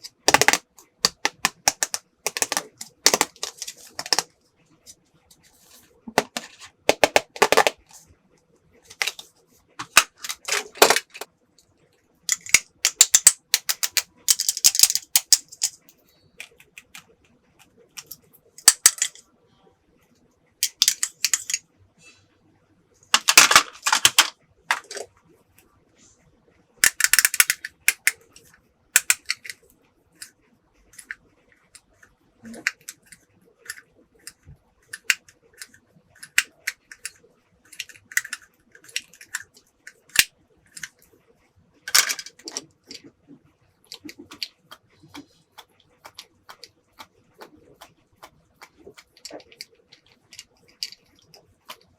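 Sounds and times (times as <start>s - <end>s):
plastic toy pieces clattering: 0.0s - 4.3s, 6.2s - 8.0s, 8.9s - 11.3s, 12.3s - 15.9s, 18.0s - 19.2s, 20.6s - 21.6s, 23.1s - 25.1s, 26.8s - 28.2s, 29.0s - 29.6s, 35.0s - 41.0s, 41.9s - 43.0s, 48.7s - 51.9s.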